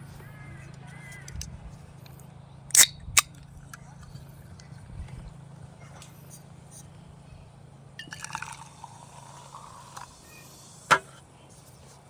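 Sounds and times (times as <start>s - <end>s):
liquid pouring: 8.0s - 10.2s.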